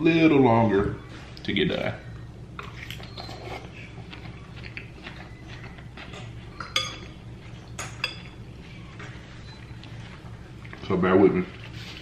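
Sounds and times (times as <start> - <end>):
cutlery clinking on a plate: 6.1 - 7.1.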